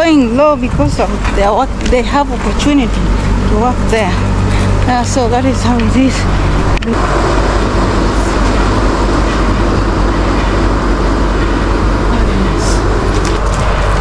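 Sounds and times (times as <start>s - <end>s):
mill machinery droning: 0.0s - 14.0s.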